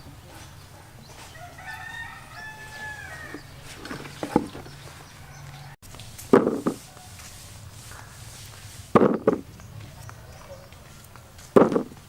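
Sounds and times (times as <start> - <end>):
rooster crowing: 0.1 - 5.8
sharp knocks: 6.3 - 6.8, 8.9 - 9.5, 11.6 - 12.0.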